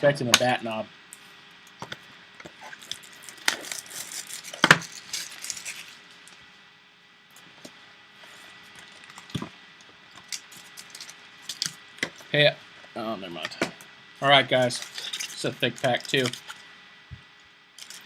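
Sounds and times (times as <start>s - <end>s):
packaging rustling: 2.6s - 6.4s, 10.2s - 11.8s, 14.6s - 16.6s, 17.8s - 18.0s.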